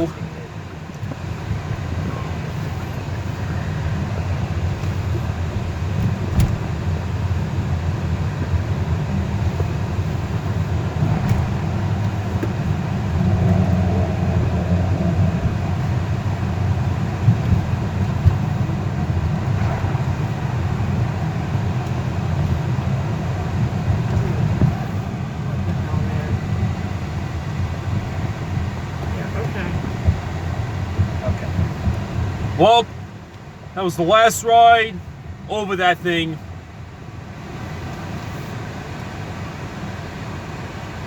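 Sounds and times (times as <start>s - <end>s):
tyre and engine rumble: 0.0s - 40.6s.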